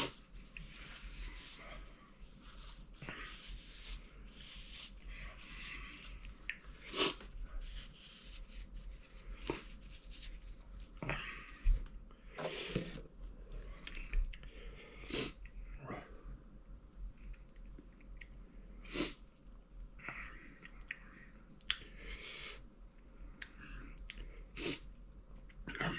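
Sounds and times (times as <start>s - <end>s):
sharp sniffs: 6.9s - 7.2s.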